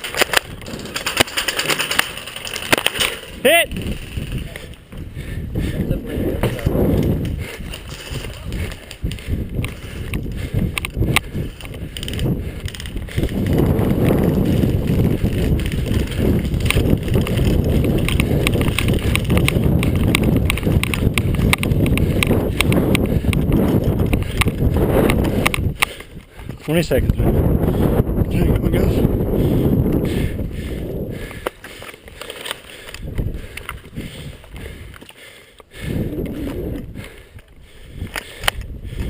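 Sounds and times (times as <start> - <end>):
low microphone rumble: 3.7 - 25.5
sharp clicks: 7.1 - 13.7, 14.8 - 26.4, 37.2 - 39.0.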